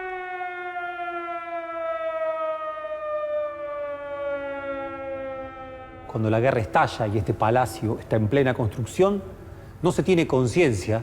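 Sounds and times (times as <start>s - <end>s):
air-raid siren winding down: 0.0s - 7.2s.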